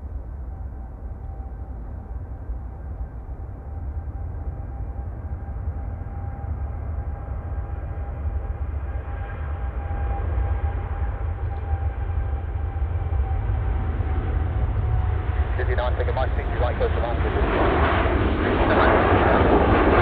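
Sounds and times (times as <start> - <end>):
jet engines rumbling and whining: 0.0 - 20.0.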